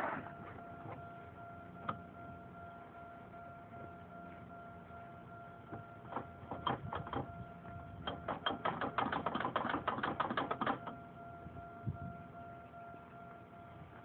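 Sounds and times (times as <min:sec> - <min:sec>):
faint steady whine: 0:00.0 - 0:14.0
rapid sharp clicks: 0:08.0 - 0:11.0.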